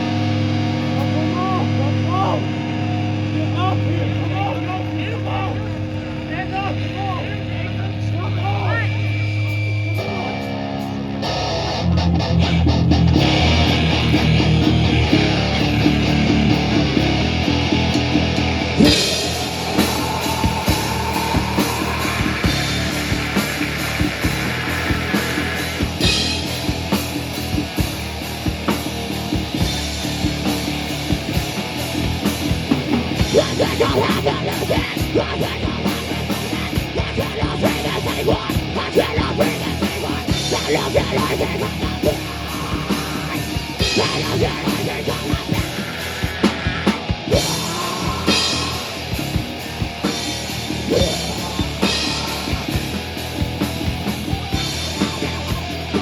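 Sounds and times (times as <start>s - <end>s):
bass guitar: 0.0s - 56.0s
distorted electric guitar: 0.0s - 56.0s
drum kit crashing cymbals: 13.2s - 56.0s.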